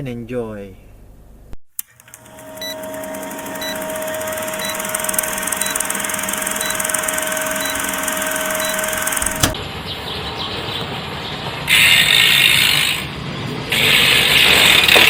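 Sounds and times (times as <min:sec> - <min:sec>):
bicycle hub ratchet clicking: 0:01.8 - 0:09.5
steady hum: 0:01.8 - 0:09.6.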